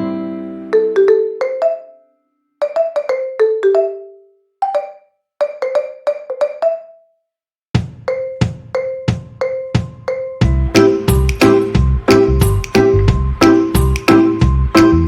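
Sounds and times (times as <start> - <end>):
bright struck notes music: 8.1 - 15.0.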